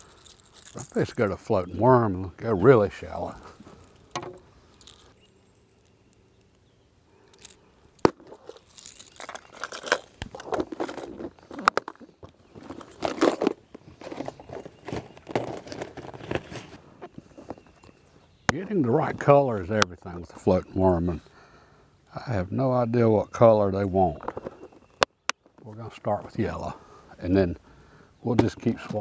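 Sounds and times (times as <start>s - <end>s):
plastic packaging crinkling: 0.0s - 1.3s, 12.6s - 16.8s.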